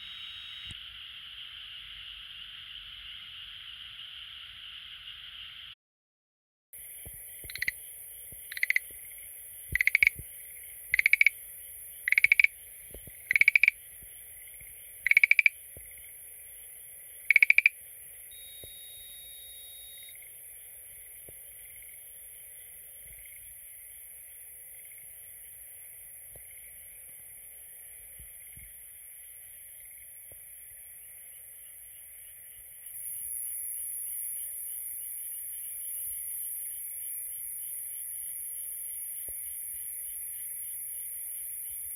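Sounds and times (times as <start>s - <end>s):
faint frog chorus: 6.8s - 41.9s
frog rattling call: 7.4s - 7.8s, 8.5s - 11.4s, 12.0s - 12.6s, 13.2s - 13.8s, 15.0s - 16.1s, 17.2s - 17.8s.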